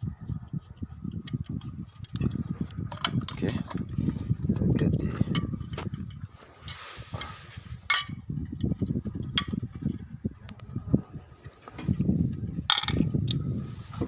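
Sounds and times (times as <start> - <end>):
metal tools clinking and knocking: 1.3 - 3.9, 4.5 - 6.3, 7.9 - 8.2, 12.7 - 13.1.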